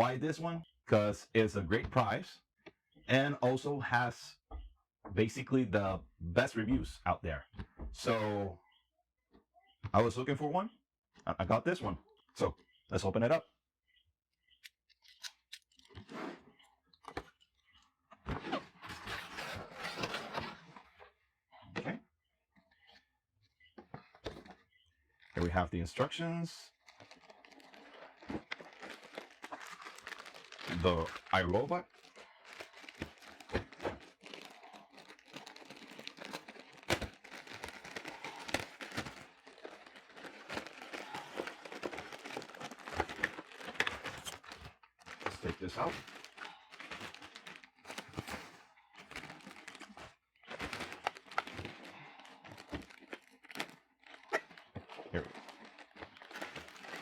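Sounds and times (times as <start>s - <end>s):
cardboard scraping and rustling: 18.3s - 20.9s
paper and plastic crinkling: 18.3s - 20.9s, 25.2s - 57.0s.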